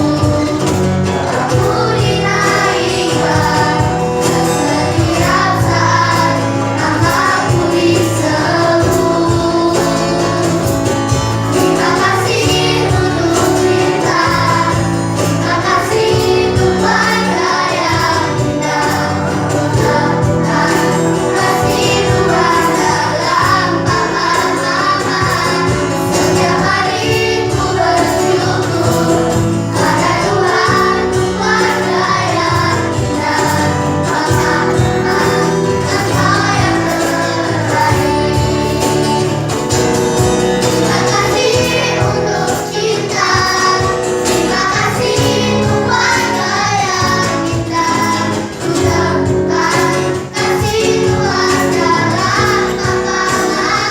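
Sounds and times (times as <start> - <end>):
group of people singing: 0.0 - 53.9
instrumental accompaniment: 0.0 - 53.9.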